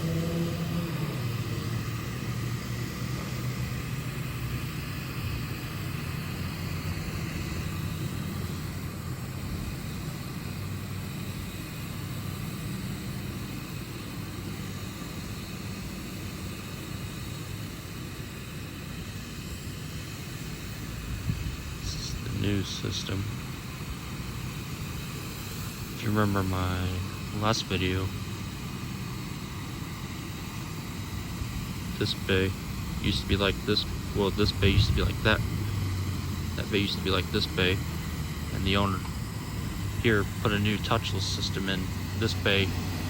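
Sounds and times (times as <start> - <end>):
low mechanical hum: 0.0 - 43.0
even hiss: 19.1 - 43.0.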